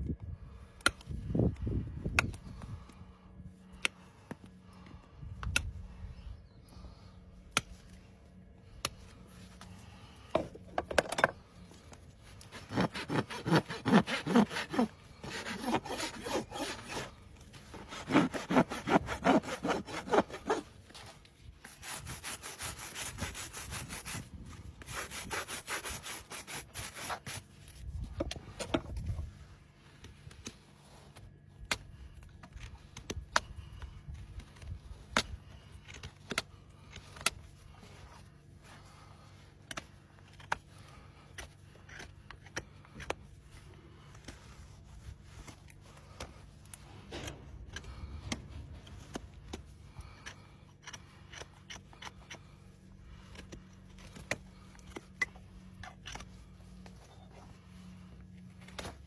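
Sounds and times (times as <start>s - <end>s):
rasp scraping hoof: 12.4s - 27.4s.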